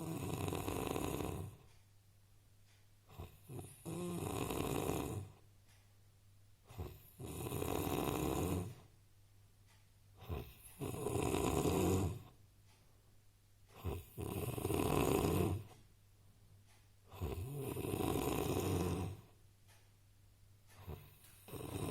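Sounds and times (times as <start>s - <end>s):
man snoring: 0.0s - 1.6s, 3.1s - 5.4s, 6.7s - 8.8s, 10.2s - 12.3s, 13.8s - 15.7s, 17.1s - 19.3s, 20.8s - 21.9s.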